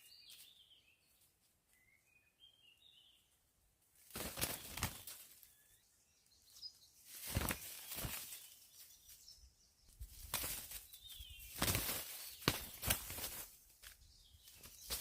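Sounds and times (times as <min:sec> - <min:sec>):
faint bird chirps: 0:00.0 - 0:03.4, 0:04.3 - 0:13.2
rustling noise: 0:10.0 - 0:15.0.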